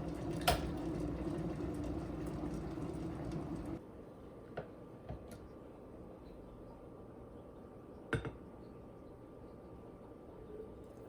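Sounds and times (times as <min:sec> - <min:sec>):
low mechanical hum: 0:00.0 - 0:08.0.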